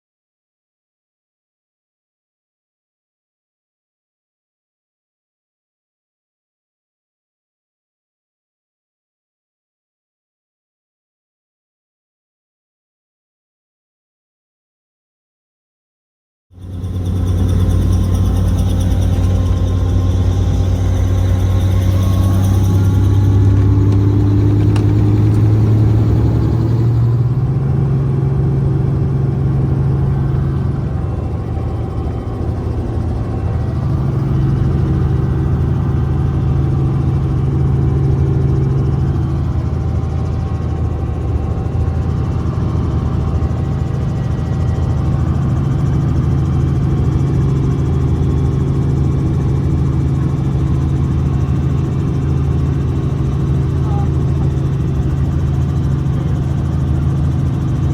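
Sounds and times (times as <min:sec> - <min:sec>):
engine running: 0:16.6 - 0:57.9.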